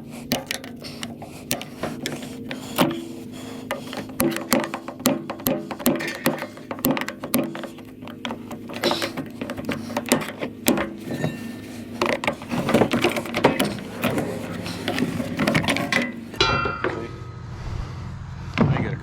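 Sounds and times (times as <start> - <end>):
hand tools clanking on scrap metal: 0.3 - 17.3
low steady sound: 16.4 - 19.0.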